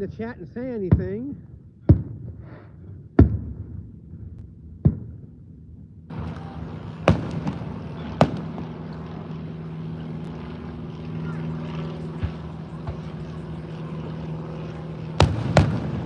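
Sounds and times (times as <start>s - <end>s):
distant fireworks booming: 6.1s - 16.0s
engine drone: 6.1s - 16.0s.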